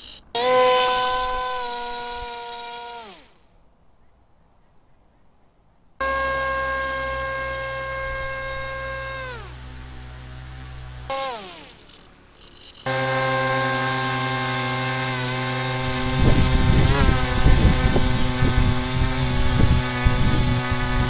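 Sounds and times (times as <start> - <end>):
small electric motor whining: 0.0 - 3.4, 6.0 - 21.0
low rumbling: 6.0 - 12.3, 12.9 - 21.0.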